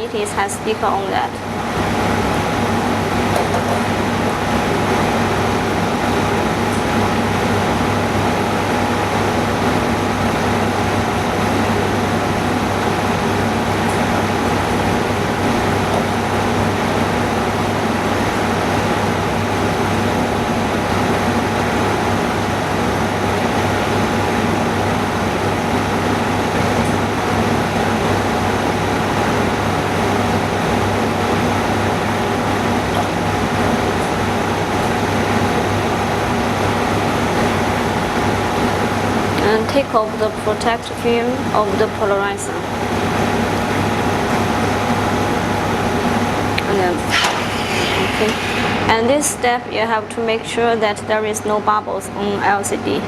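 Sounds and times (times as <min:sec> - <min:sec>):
low hum: 0:00.0 - 0:50.8
faint steady whine: 0:00.0 - 0:53.0
machinery whirring: 0:00.0 - 0:53.0
rushing air: 0:47.1 - 0:49.4.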